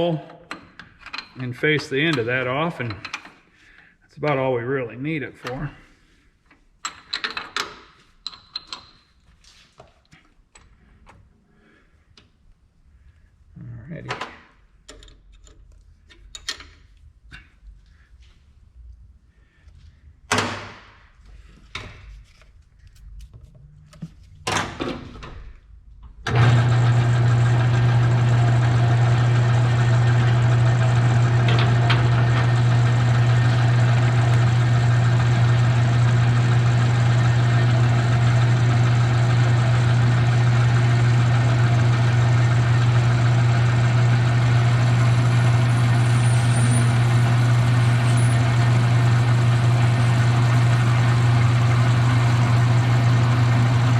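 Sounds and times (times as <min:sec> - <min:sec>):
lathe motor humming: 0:26.3 - 0:53.9.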